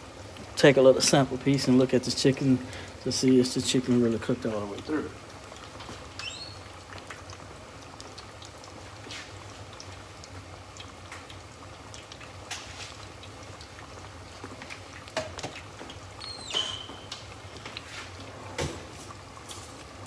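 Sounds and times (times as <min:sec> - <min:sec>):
chicken deep-frying in oil: 0:00.0 - 0:20.0.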